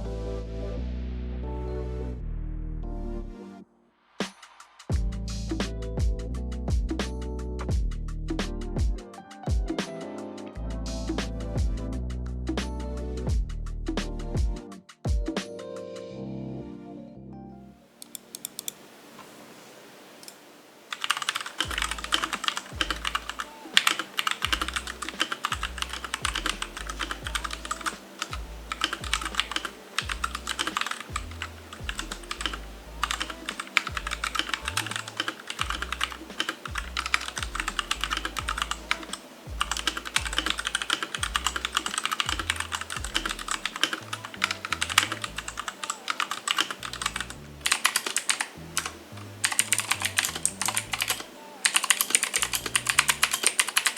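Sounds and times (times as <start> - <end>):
fast mechanical keyboard typing: 20.9 - 53.9.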